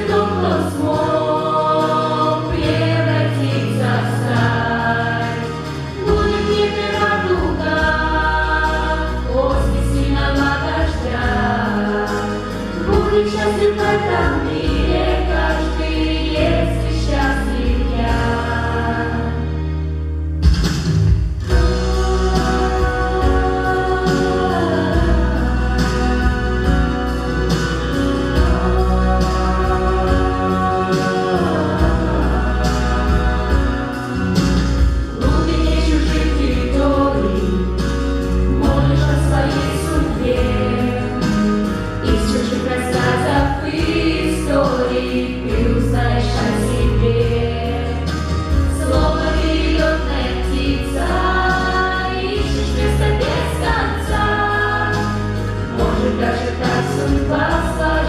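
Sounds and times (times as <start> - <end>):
pop song with drums and bass: 0.0 - 19.8, 20.4 - 58.0
person singing: 21.6 - 27.7, 28.3 - 34.4.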